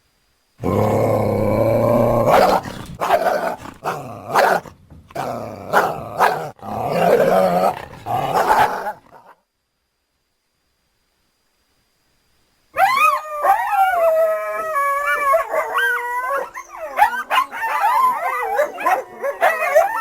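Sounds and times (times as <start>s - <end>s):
coyote growling: 0.6s - 9.3s
coyote barking calls: 2.1s - 9.0s.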